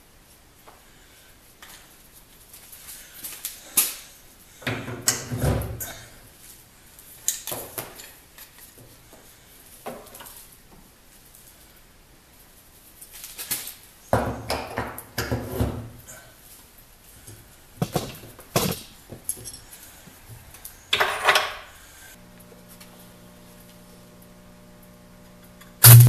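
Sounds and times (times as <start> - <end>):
steady electrical hum: 0.0 - 26.0.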